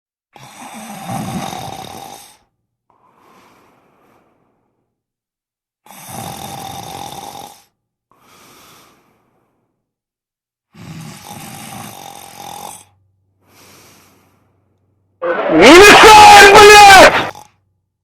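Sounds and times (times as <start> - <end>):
loud snoring: 0.4 - 2.5, 5.8 - 7.8, 10.7 - 13.0
quiet breath: 2.0 - 5.0, 7.5 - 10.0, 12.7 - 14.9.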